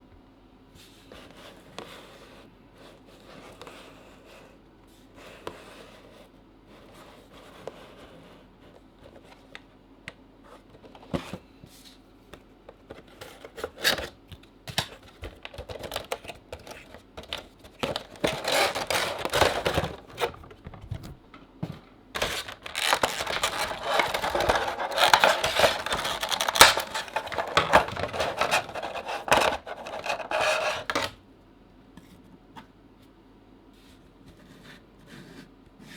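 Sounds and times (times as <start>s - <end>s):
packaging crinkling and tearing: 14.8s - 21.2s, 22.2s - 31.1s.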